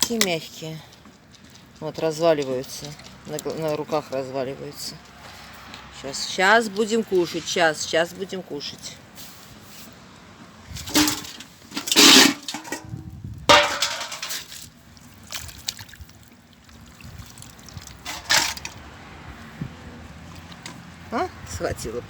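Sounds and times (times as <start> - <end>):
wet sloshing and splattering: 13.4 - 19.0.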